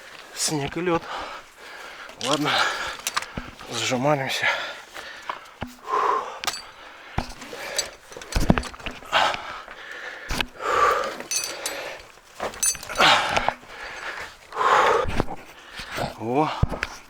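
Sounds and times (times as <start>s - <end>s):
gear knocking and scraping on rock: 2.0s - 4.0s, 6.4s - 9.2s, 10.4s - 14.2s
person breathing hard and grunting: 9.0s - 12.0s.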